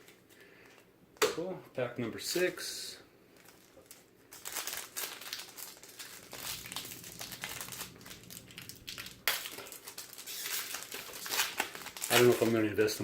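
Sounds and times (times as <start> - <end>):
plastic wrapper crinkling and tearing: 3.3 - 13.0.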